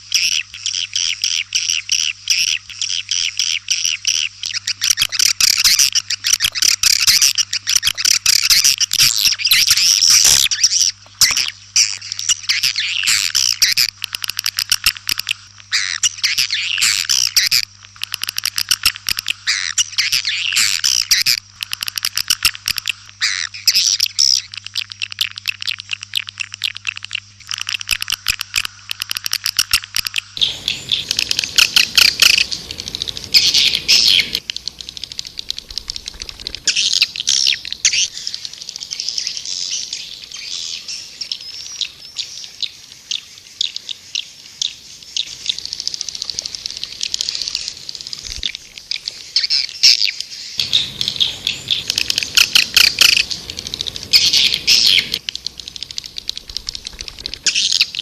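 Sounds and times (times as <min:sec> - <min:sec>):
swiftlets chirping and twittering: 0:00.1 - 0:58.0
steady low hum: 0:30.2 - 0:42.9, 0:50.6 - 0:58.0.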